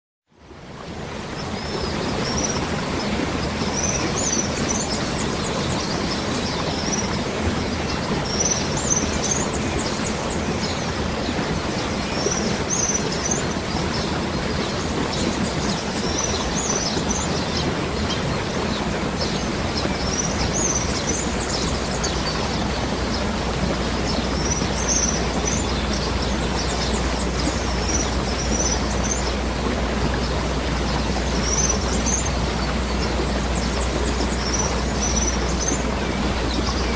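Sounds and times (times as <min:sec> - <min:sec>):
waterfall rushing: 0:00.5 - 0:36.9.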